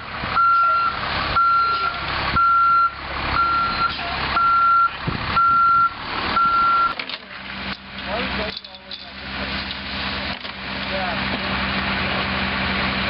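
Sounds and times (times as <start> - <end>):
vehicle engine rumble: 0.0 - 13.0
vehicle backup alarm beeping: 0.4 - 7.0.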